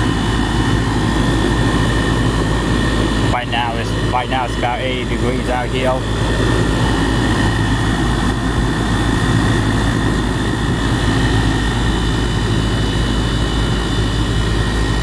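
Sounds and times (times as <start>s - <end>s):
compressor low hum: 0.0s - 15.0s
condenser fan rushing: 0.0s - 15.0s.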